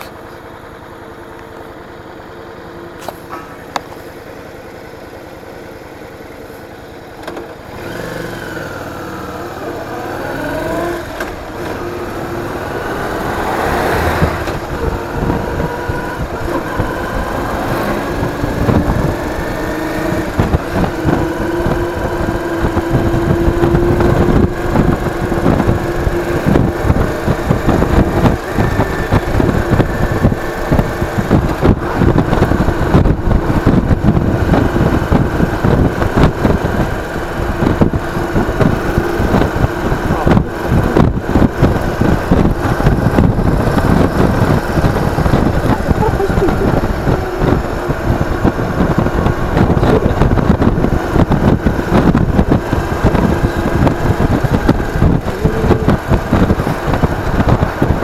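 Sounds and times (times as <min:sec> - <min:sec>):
motorcycle engine running: 0:00.0 - 0:58.0
wind buffeting microphone: 0:10.2 - 0:58.0.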